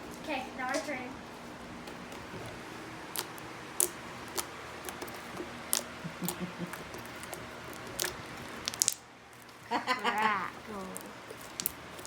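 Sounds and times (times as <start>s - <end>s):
soft slime squelches: 1.3s - 9.6s.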